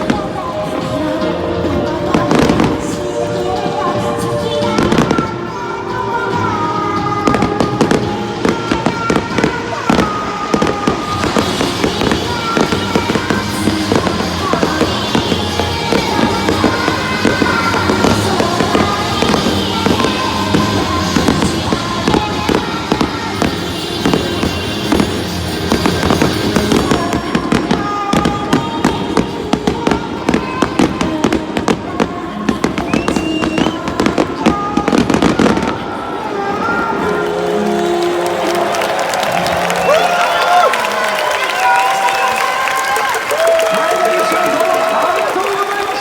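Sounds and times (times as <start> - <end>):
music playing: 0.0 - 46.0
fireworks cracks and pops: 7.8 - 31.8.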